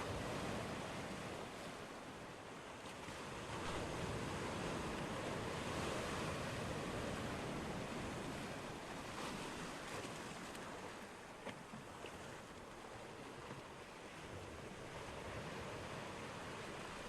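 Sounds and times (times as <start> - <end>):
ocean waves rushing: 3.4 - 11.0.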